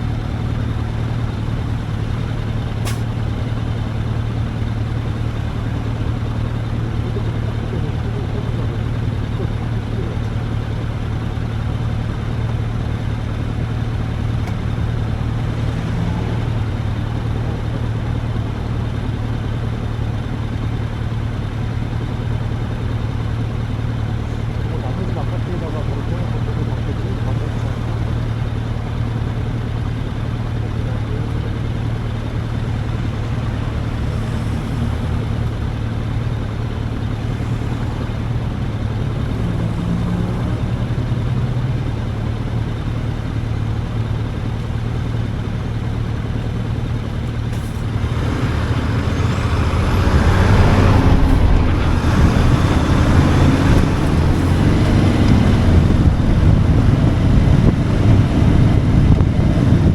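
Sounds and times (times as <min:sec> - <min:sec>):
motorcycle engine humming: 0:00.0 - 0:59.9
wind noise on microphone: 0:50.8 - 0:59.9.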